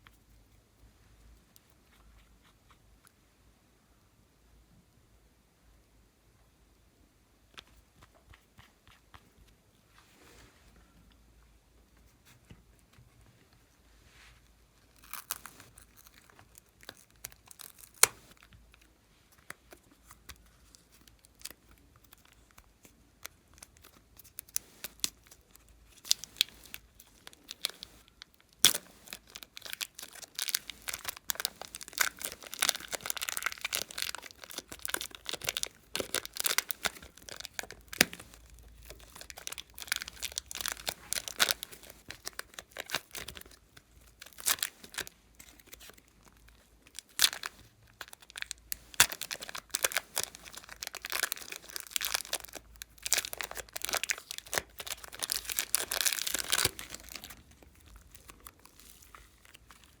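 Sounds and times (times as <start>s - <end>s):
slime crackling and popping: 14.9s - 60.0s.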